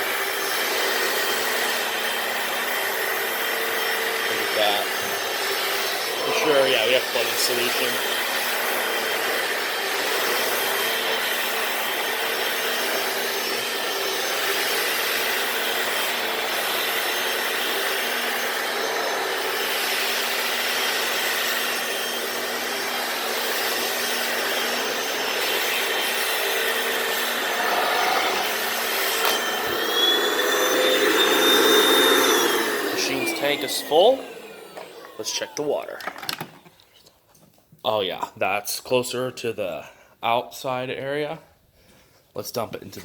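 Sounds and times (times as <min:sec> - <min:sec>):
spinning brushes scrubbing floor: 0:00.0 - 0:35.6
vacuum motor whine: 0:00.0 - 0:36.6
rising tone: 0:27.0 - 0:35.6.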